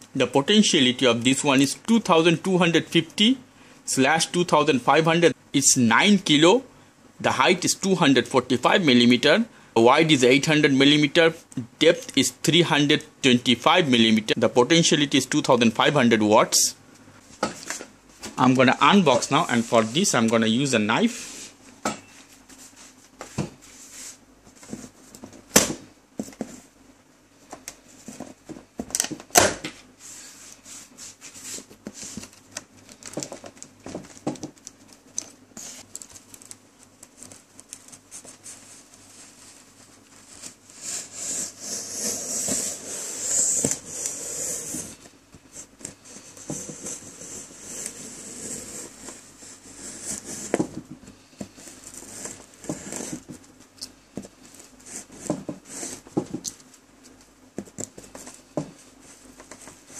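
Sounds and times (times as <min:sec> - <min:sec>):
scratchy rasping of packaging: 0:30.1 - 0:50.6, 0:51.6 - 0:53.6.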